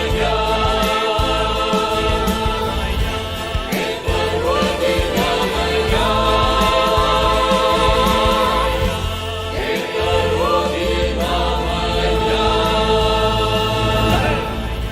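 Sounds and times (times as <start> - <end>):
song with choir-like voices: 0.0 - 14.9.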